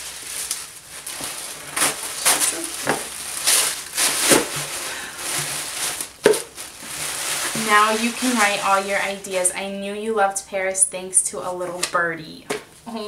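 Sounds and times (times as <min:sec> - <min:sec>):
wrapping paper crinkling and tearing: 0:00.0 - 0:09.6.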